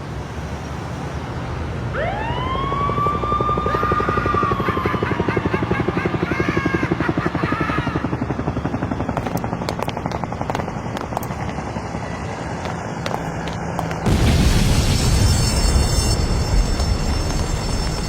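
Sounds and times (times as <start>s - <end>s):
helicopter rotors chopping overhead: 0.0s - 18.0s
police sirens wailing: 1.9s - 18.0s
loud rush of noise: 11.9s - 18.0s.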